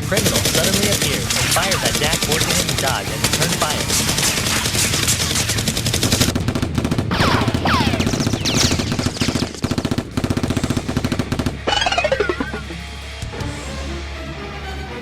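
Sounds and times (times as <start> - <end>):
machine-gun bursts: 0.0 - 12.8
short falling whines: 11.7 - 13.1.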